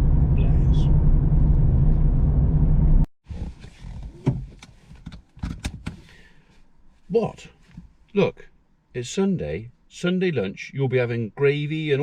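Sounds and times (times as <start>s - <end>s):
vehicle rumble inside cab: 0.0s - 4.9s.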